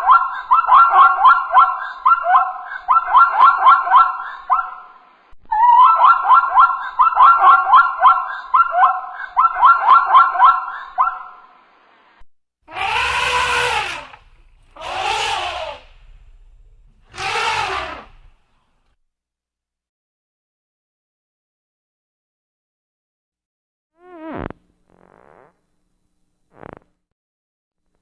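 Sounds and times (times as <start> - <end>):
animal chirping or yelping: 0.0 - 11.4, 12.7 - 16.2, 17.1 - 18.3
animal calls rising and falling: 12.7 - 18.6.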